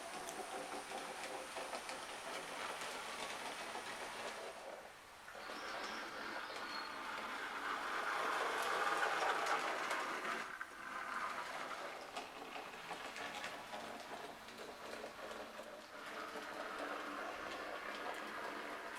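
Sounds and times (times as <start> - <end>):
model train whirring rattle: 0.0 - 18.9.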